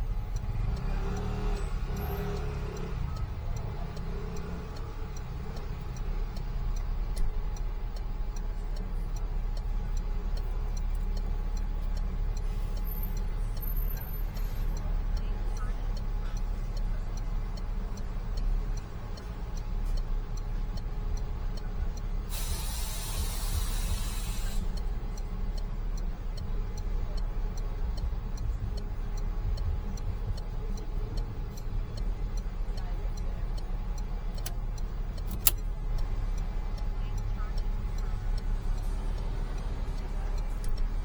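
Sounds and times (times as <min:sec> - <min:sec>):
light regular ticking: 0:00.0 - 0:41.0
van engine running: 0:00.0 - 0:41.0
hiss burst: 0:22.3 - 0:24.6
sharp clicks: 0:33.2 - 0:37.7.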